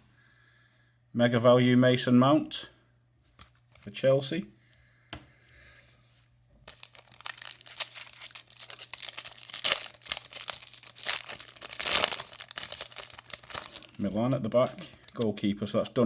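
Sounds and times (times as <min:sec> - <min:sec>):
wrapper tearing and crinkling: 0:06.7 - 0:14.2.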